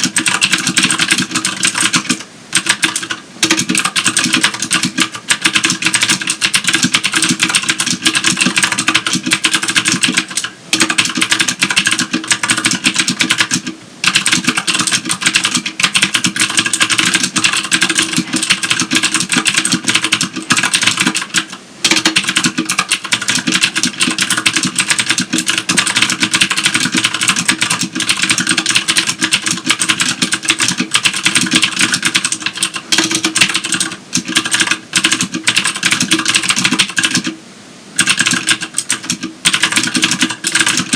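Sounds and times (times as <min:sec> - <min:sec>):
clicky keyboard typing: 0:00.0 - 0:37.4, 0:38.0 - 0:40.9.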